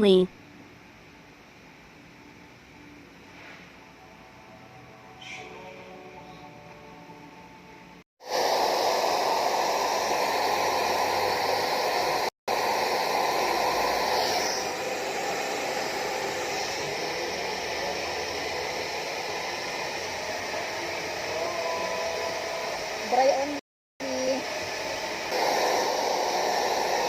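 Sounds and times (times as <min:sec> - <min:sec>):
hair dryer blowing: 0:08.2 - 0:27.0.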